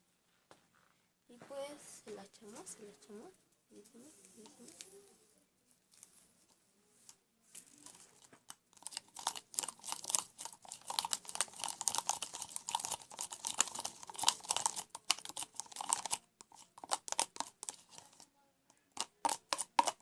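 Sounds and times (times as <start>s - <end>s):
slime sticky clicking and smacking: 8.8s - 17.9s.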